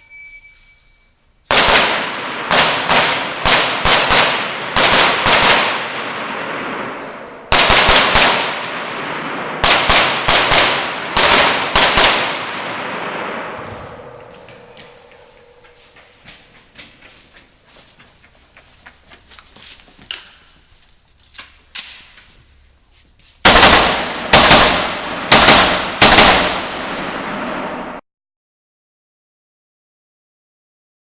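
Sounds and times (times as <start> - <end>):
gunshots echoing indoors: 1.4 - 17.0, 23.4 - 28.0.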